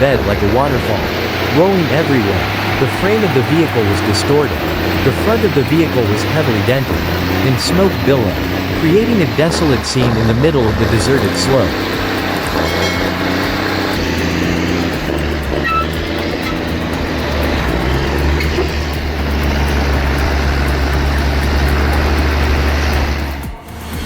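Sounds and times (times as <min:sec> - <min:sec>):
large engine running: 0:00.0 - 0:24.0.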